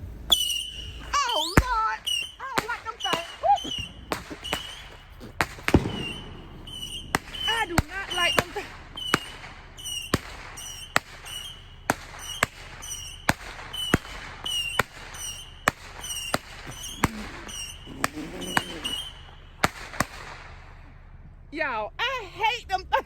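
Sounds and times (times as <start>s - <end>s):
fireworks whistle: 0.0s - 21.1s
fireworks popping: 0.0s - 21.7s.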